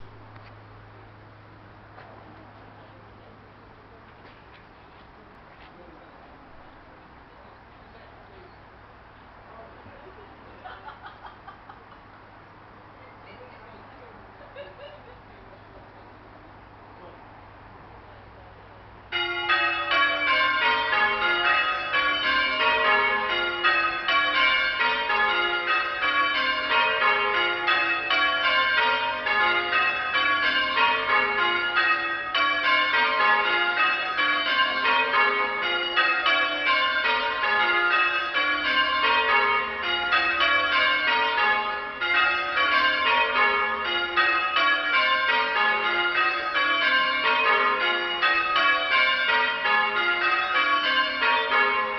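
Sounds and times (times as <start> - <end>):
church bells change ringing: 19.0 - 51.9.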